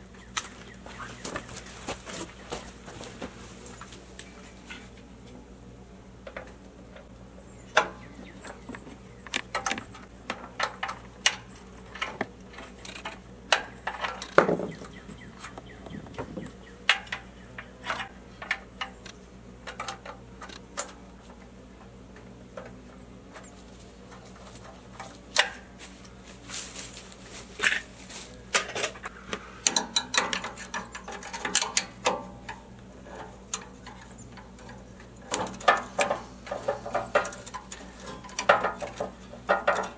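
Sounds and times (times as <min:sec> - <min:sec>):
hand tools clanking on engine parts: 0:07.7 - 0:26.1, 0:27.6 - 0:39.9.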